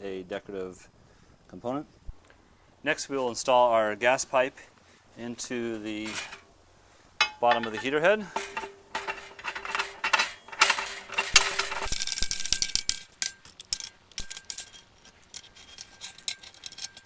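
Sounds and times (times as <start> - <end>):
metal clinking and scraping: 7.2 - 17.0.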